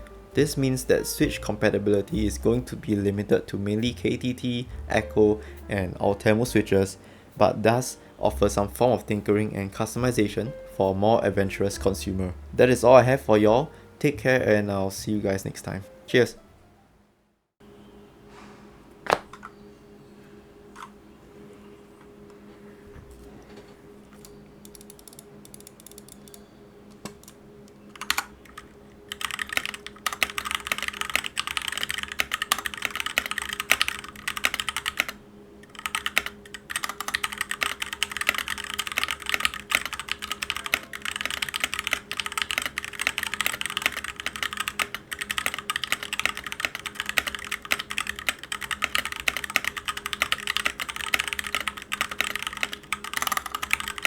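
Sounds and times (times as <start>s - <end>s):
typing on mechanical keyboard: 24.2s - 26.4s, 28.0s - 54.0s.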